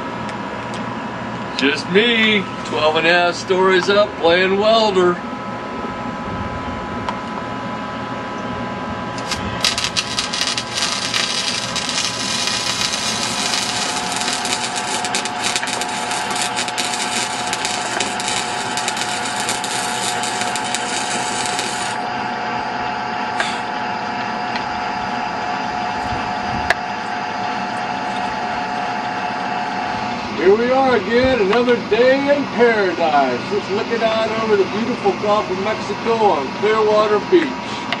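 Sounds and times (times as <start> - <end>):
steady machine hum: 0.0 - 38.0
crackling welding arc: 9.2 - 22.1.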